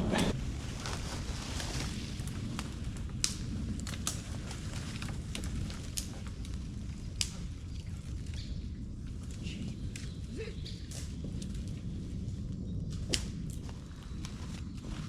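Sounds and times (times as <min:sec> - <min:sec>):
branch dragged over forest floor: 0:00.0 - 0:03.1
twigs snapping: 0:01.7 - 0:11.8, 0:12.9 - 0:15.0.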